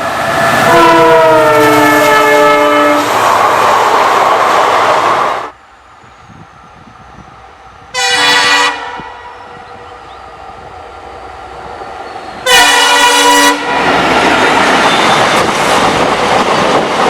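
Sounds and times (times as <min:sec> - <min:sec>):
train running past: 0:00.0 - 0:17.0
locomotive air horn blasts: 0:00.6 - 0:03.1, 0:07.9 - 0:09.4, 0:12.4 - 0:13.8.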